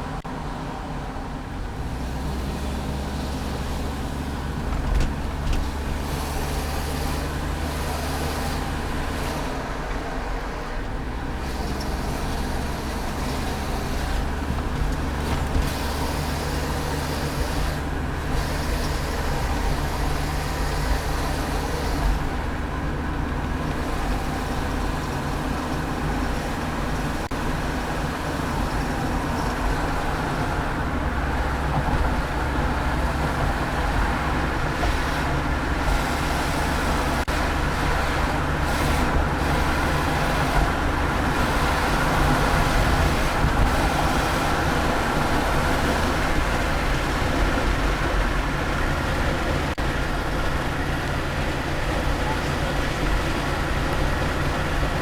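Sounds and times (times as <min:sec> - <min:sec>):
car engine and road noise: 0:00.0 - 0:55.0.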